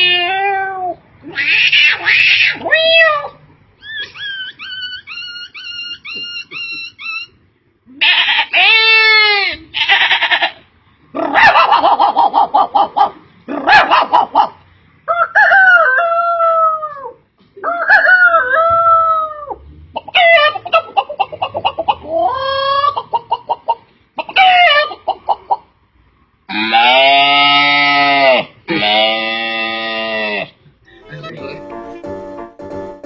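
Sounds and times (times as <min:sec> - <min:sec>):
man imitating animal calls: 0:26.5 - 0:31.6.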